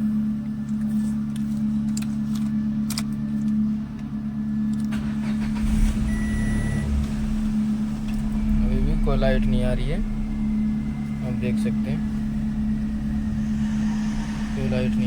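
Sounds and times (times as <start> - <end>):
car engine idling: 0.0 - 15.0
low rumble: 4.8 - 15.0.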